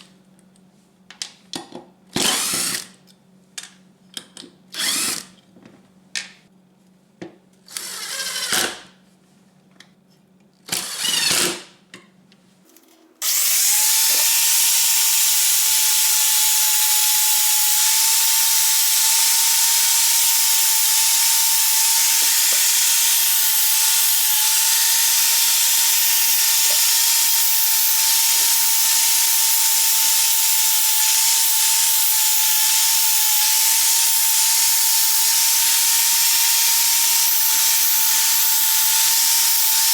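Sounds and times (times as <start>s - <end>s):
power tool whining: 2.2s - 3.0s, 4.7s - 5.4s, 13.2s - 39.9s.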